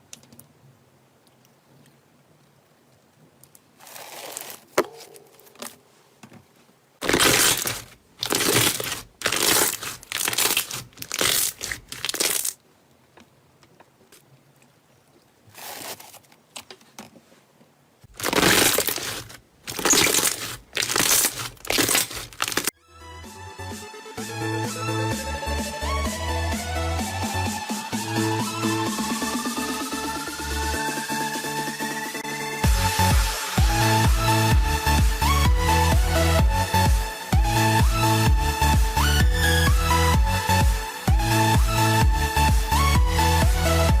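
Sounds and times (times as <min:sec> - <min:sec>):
slime squishing by hand: 0:07.0 - 0:12.6, 0:18.1 - 0:22.7.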